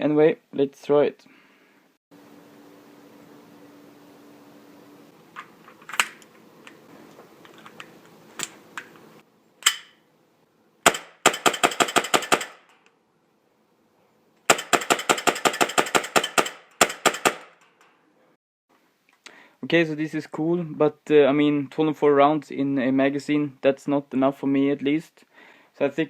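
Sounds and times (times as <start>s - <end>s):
airsoft pistol shots: 9.6s - 10.0s, 10.9s - 12.7s, 14.5s - 17.7s
pistol handling clicks: 9.6s - 10.0s.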